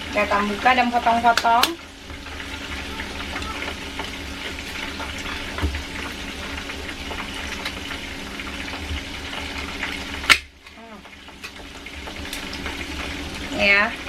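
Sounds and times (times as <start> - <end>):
chicken deep-frying in hot oil: 0.0 - 14.0.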